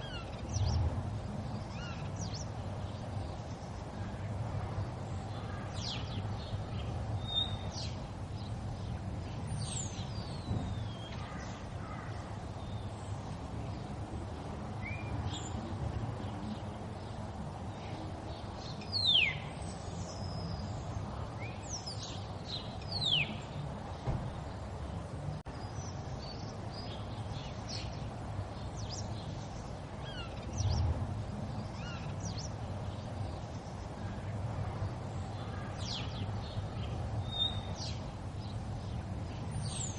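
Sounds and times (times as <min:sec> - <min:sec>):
small birds whistling: 0:18.8 - 0:20.8.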